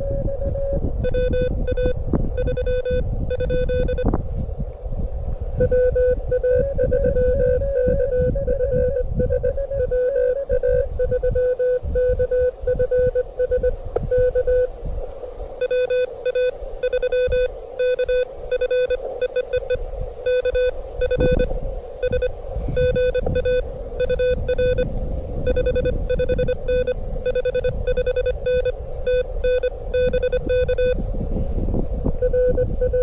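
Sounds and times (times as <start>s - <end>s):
wind rumble on microphone: 0.0s - 33.0s
morse code beeps: 1.0s - 4.1s, 5.6s - 8.2s, 8.8s - 14.7s, 15.6s - 31.0s, 32.2s - 33.0s.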